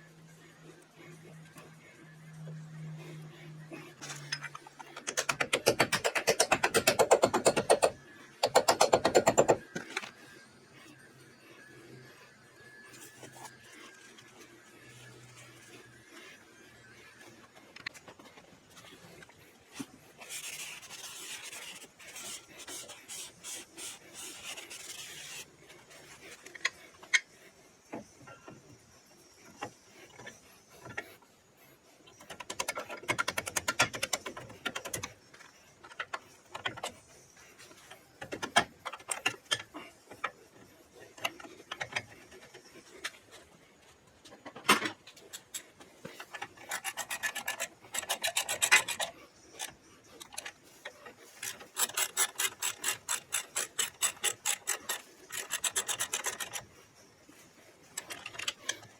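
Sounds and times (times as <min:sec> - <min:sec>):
hand tool clicks and knocks: 0:04.4 - 0:09.6.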